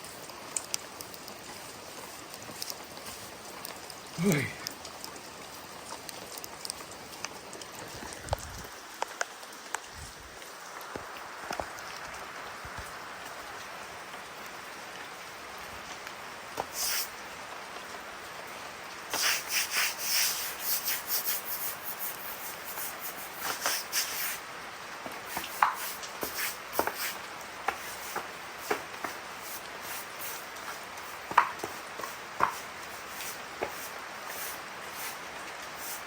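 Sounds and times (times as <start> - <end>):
rain hiss: 0.0 - 36.0
quick scraping strokes: 16.6 - 17.1, 19.1 - 24.4, 25.3 - 35.2, 35.8 - 36.0.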